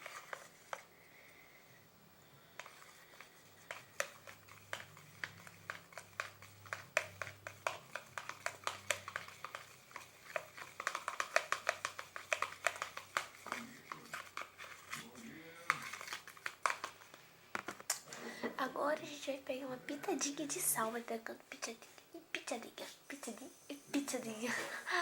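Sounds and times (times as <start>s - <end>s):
hand squishing sticky mixture: 2.6s - 17.2s.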